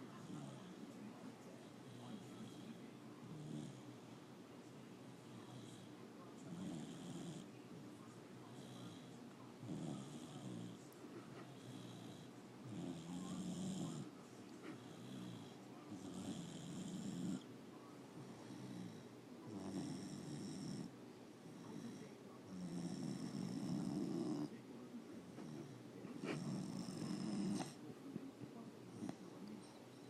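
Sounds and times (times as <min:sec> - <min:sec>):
dog snoring with whistle: 0:11.6 - 0:17.4, 0:26.2 - 0:27.8.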